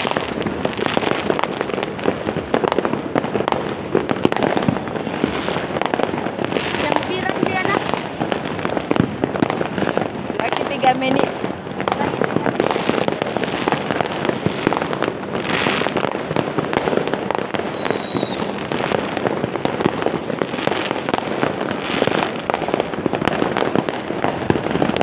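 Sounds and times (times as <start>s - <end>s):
fireworks crackling bangs: 0.0s - 25.0s
firework whistle: 12.6s - 25.0s.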